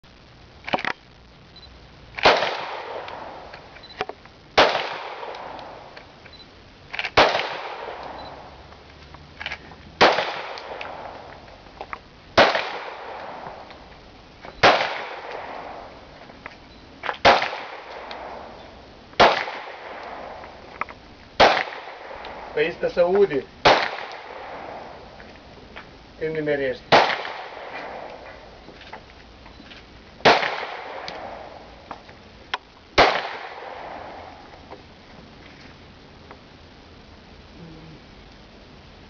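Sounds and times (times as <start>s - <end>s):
pistol shots echoing: 2.2s - 3.4s, 4.6s - 5.6s, 7.2s - 8.2s, 10.0s - 11.2s, 12.4s - 13.6s, 14.6s - 15.9s, 17.2s - 18.5s, 19.2s - 20.4s, 21.4s - 22.6s, 23.6s - 24.9s, 26.9s - 28.2s, 30.2s - 31.6s, 33.0s - 34.2s.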